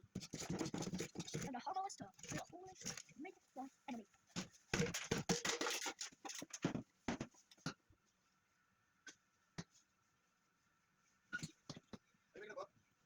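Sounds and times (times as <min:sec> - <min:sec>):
kettle parts scraping and clattering: 0:00.0 - 0:07.6.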